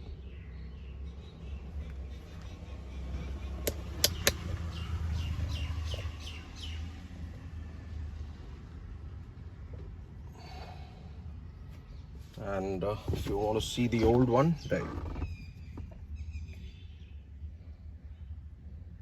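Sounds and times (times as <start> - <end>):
bird chirping: 0.0 - 7.0, 13.4 - 18.4
steady low rumble: 0.0 - 19.0
sharp clicks: 3.6 - 4.6.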